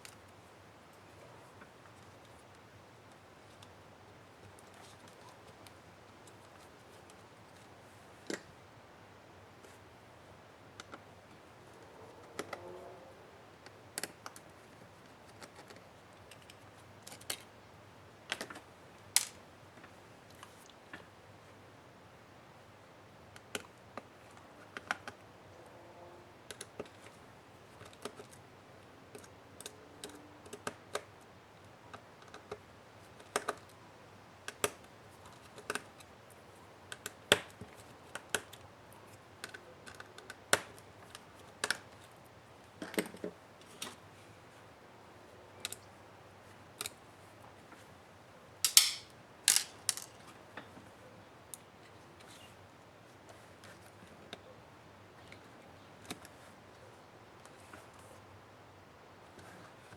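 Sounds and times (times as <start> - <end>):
hand tools clicking on laptop case: 48.6 - 50.1
parts clattering: 48.6 - 50.2.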